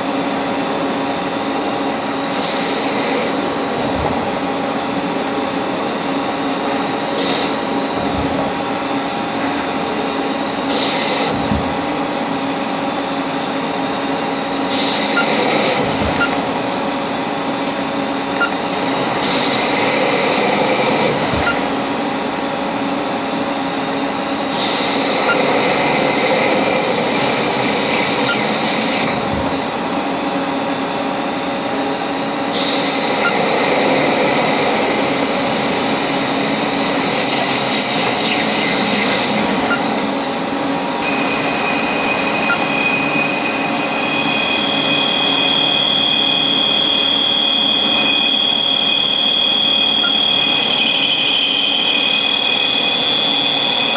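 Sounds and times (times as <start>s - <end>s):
lathe machine hum: 0.0s - 53.9s
loud machining hiss: 18.7s - 22.2s, 33.6s - 53.9s.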